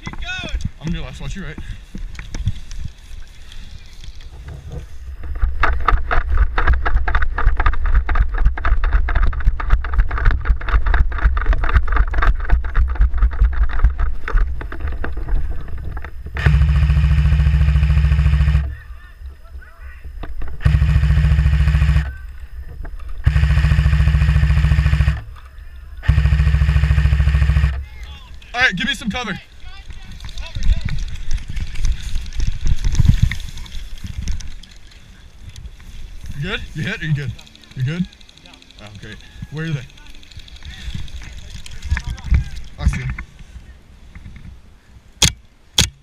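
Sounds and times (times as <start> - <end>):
fast clattering with rumble: 4.3 - 18.8
airsoft rifle full-auto bursts: 16.4 - 18.8, 20.6 - 22.2, 23.2 - 25.4, 26.0 - 27.9.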